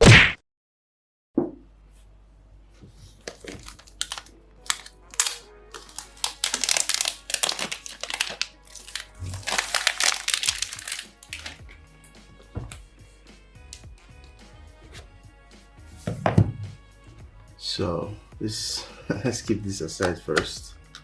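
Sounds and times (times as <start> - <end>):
soft background music: 2.9 - 21.0
packaging crinkling and tearing: 3.1 - 11.7.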